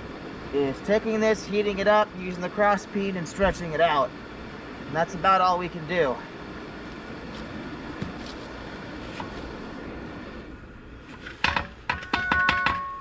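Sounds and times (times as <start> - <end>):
struck metal ringing: 11.4 - 13.0.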